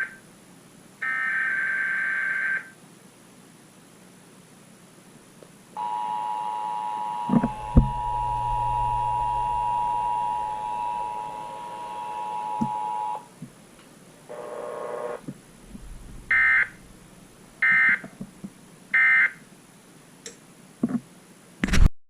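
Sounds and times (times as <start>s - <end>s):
two-tone attention signal: 7.2s - 13.2s, 16.2s - 16.8s
burst of noise: 7.3s - 13.2s, 14.3s - 18.9s
digital data tone bursts: 15.9s - 17.0s.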